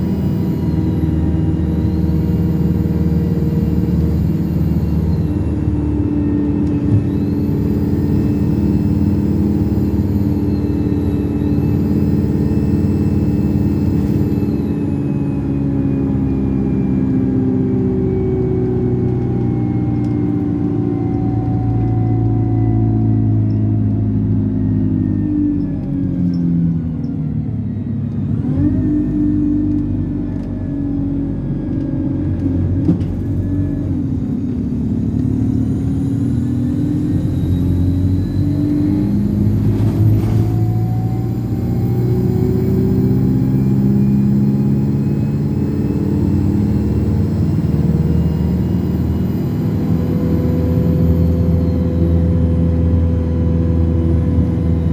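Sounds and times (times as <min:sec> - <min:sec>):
turbocharger whistle: 0:00.0 - 0:18.4, 0:35.3 - 0:54.9
bus diesel engine drone: 0:00.0 - 0:54.9.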